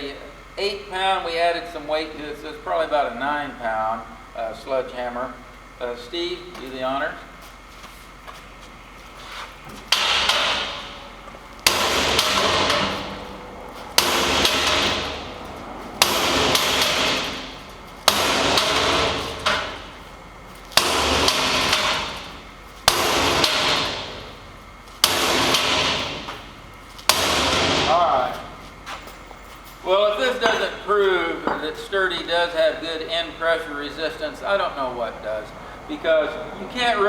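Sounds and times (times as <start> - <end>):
sledgehammer clanging on steel: 9.9 - 20.1, 20.7 - 24.4, 25.0 - 28.5, 30.0 - 32.4.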